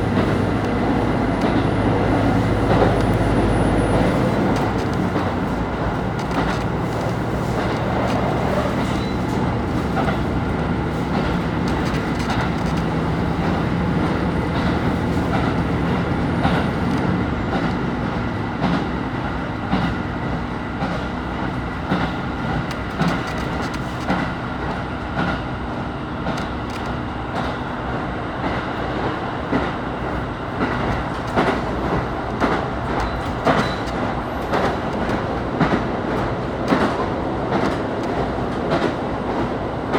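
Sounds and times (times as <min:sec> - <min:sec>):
wheels clicking over rail joints: 0:00.0 - 0:18.9, 0:20.8 - 0:27.7, 0:28.4 - 0:39.9
diesel railcar engine drone: 0:00.0 - 0:39.9.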